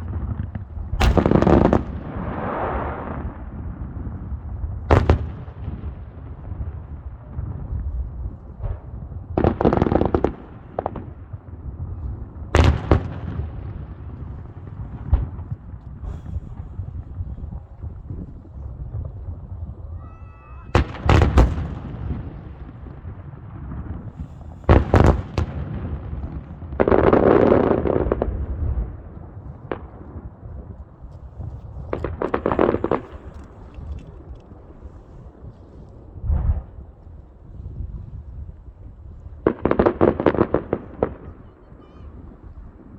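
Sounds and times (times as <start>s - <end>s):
fireworks crackling bangs: 0.0s - 19.8s, 20.6s - 35.4s, 39.1s - 42.9s
faint fireworks pops: 0.0s - 42.9s
loud sharp fireworks booms: 0.0s - 42.9s
steady low rumble: 10.3s - 20.0s, 28.0s - 39.5s
fireworks crackling burst: 31.4s - 35.0s.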